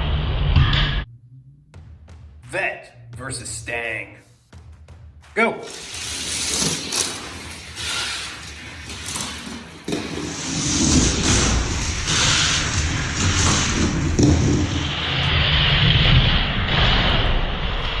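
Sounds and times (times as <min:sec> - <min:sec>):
toy cars rattling down plastic track: 0:05.6 - 0:14.6.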